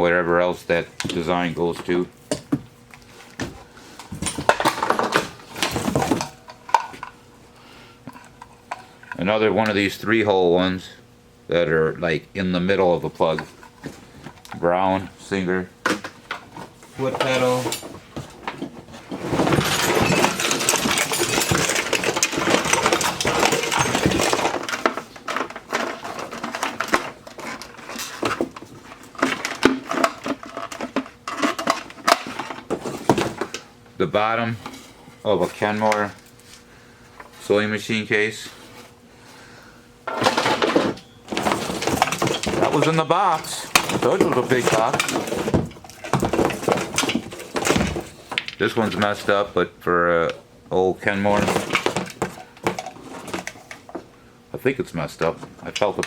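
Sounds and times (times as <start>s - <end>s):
clattering and rustling: 1.0s - 7.2s, 15.8s - 33.7s, 40.1s - 49.5s, 51.2s - 54.1s
metal pieces knocking and clicking: 19.3s - 33.3s.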